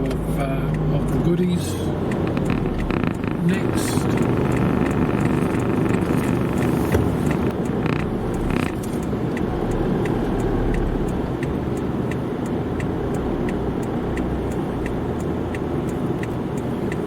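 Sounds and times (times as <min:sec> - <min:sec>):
light ticking: 0:00.0 - 0:17.0
road and engine rumble: 0:00.0 - 0:17.0.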